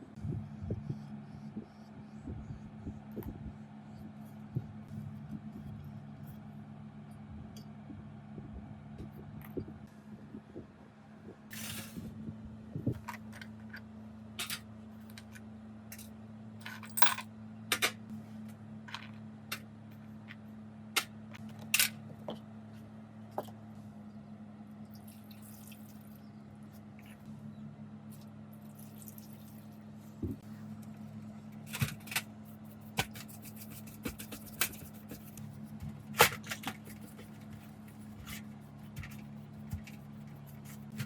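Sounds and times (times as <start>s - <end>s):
steady low hum: 0.0s - 41.0s
metal parts clicking and clinking: 14.4s - 18.0s
scraping and rustling: 31.6s - 41.0s.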